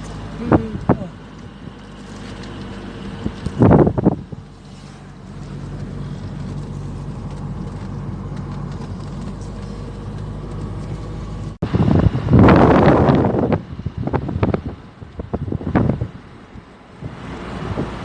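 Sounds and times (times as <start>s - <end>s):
car engine and road hum: 0.0s - 18.0s
wind on microphone: 3.2s - 4.6s, 11.6s - 18.0s.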